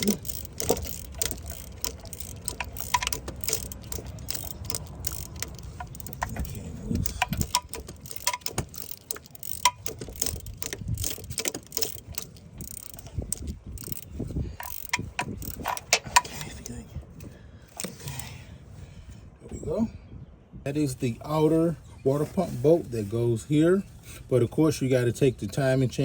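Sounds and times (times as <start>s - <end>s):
ratchet wrench clicking: 0.0s - 16.7s
metal clicks and clinks: 0.0s - 16.8s.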